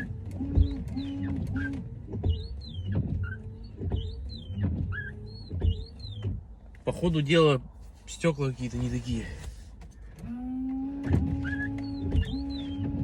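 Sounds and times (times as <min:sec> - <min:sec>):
wiper blades squealing on glass: 0:00.0 - 0:06.3, 0:10.5 - 0:13.0.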